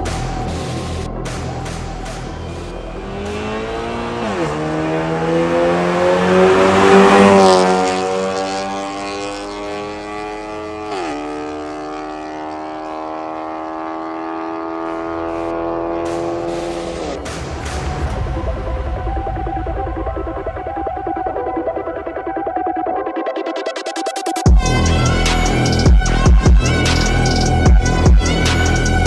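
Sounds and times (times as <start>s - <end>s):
car exhaust accelerating hard: 0.8s - 21.3s.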